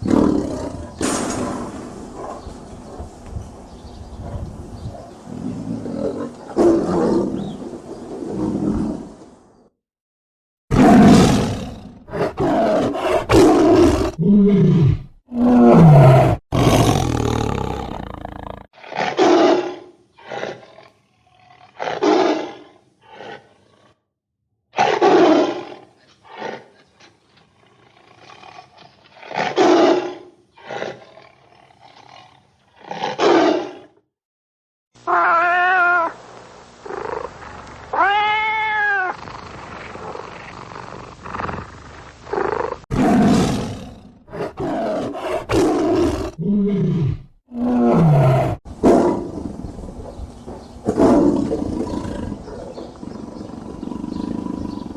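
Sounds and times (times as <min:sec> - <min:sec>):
tigers roaring and growling: 0:00.0 - 0:02.2, 0:10.7 - 0:24.0, 0:39.1 - 0:50.1, 0:50.8 - 0:54.9.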